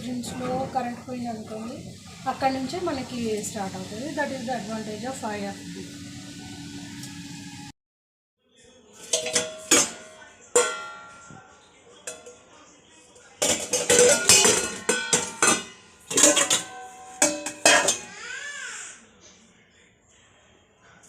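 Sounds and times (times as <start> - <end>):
dishes and cutlery clinking: 0.0 - 1.1, 8.9 - 18.3.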